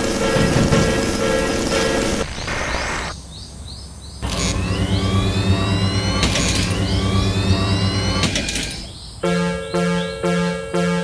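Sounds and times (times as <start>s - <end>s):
short sharp burst: 0.2s - 3.2s
low hum: 4.2s - 8.8s
machine whine rising in pitch: 4.2s - 8.8s.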